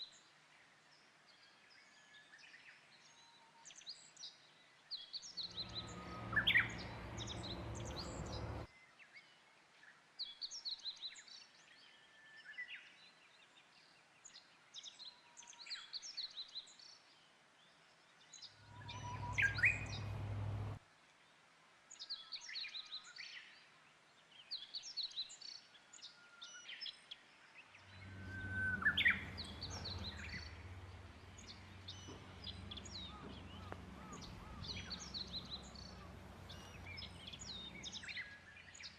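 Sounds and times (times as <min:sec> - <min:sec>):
small birds chirping: 0:05.0 - 0:08.7, 0:18.3 - 0:20.8, 0:24.4 - 0:38.9
bush warbler singing: 0:05.2 - 0:08.7, 0:18.6 - 0:20.8, 0:27.8 - 0:38.9
low rumble: 0:05.5 - 0:08.7, 0:18.6 - 0:20.8, 0:27.9 - 0:38.9.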